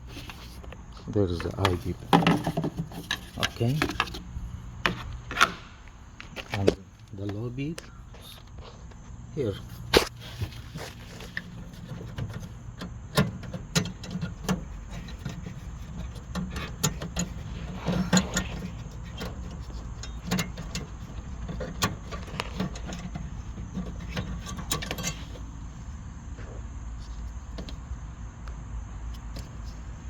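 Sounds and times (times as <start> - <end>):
low steady hum: 0.0 - 30.0
plastic parts clicking and knocking: 1.4 - 7.9, 10.8 - 25.5.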